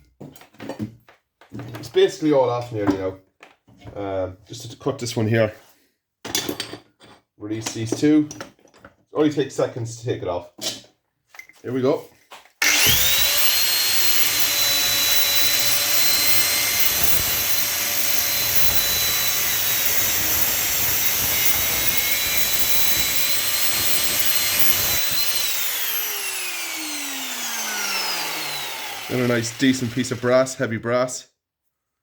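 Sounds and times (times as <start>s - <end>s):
angle grinder cutting metal: 12.6s - 30.5s.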